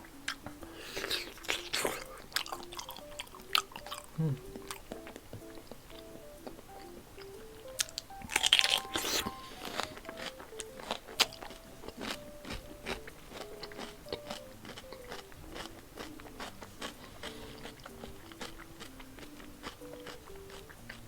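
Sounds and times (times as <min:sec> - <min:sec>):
person chewing and biting food: 0:00.0 - 0:21.0
soft melody: 0:00.0 - 0:21.0.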